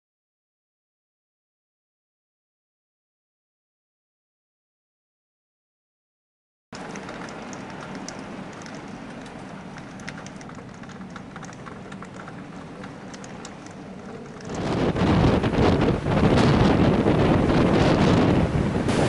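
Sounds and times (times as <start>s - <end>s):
steady hiss with ticks: 6.8s - 15.4s
breaking surf: 6.8s - 19.0s
storm wind buffeting microphone: 6.8s - 19.0s.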